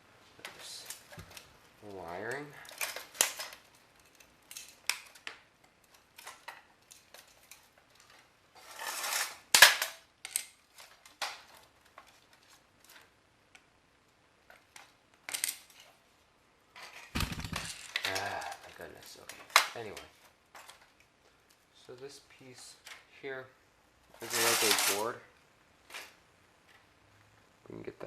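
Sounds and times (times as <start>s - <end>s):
scraping rustle: 5.9s - 9.5s, 24.1s - 25.2s
dull thump: 17.2s - 17.8s.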